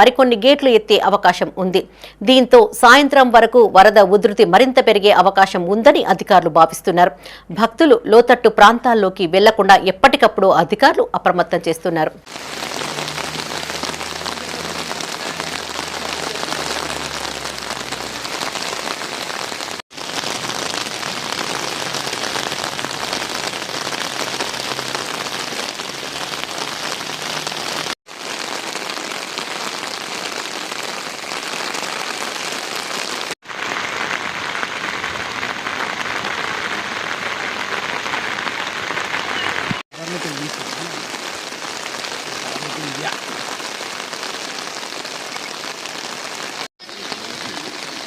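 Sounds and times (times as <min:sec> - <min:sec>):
water rushing: 0:12.2 - 0:48.0.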